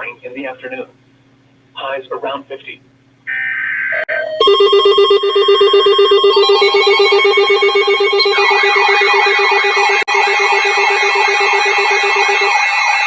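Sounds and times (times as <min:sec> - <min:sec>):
buzzy electronic alarm tone: 0:03.3 - 0:13.0.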